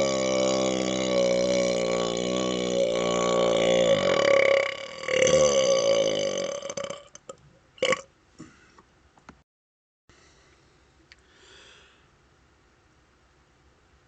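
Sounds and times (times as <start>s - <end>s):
man burping: 0.0s - 8.5s.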